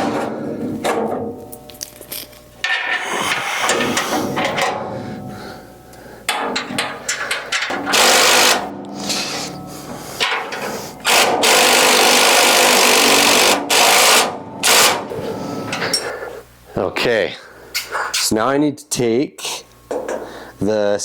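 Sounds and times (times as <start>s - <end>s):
metal clanks: 0.0s - 5.6s, 6.3s - 11.5s
handheld power tool running: 7.7s - 9.5s, 11.0s - 15.0s.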